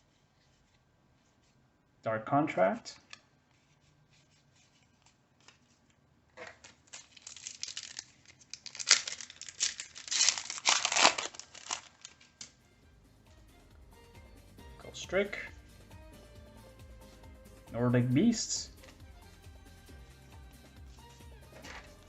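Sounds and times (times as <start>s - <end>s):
foil wrapper crinkling and tearing: 6.4s - 12.6s.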